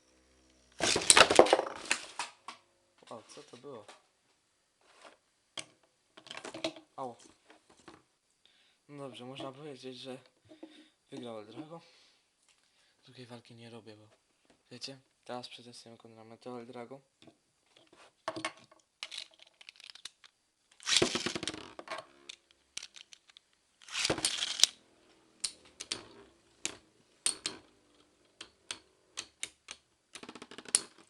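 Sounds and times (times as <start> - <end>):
faint steady hum: 0.0 - 31.0
ripcord launcher zipping rattle: 20.8 - 24.8
spinning tops clashing clicks: 20.8 - 24.8, 25.4 - 27.7.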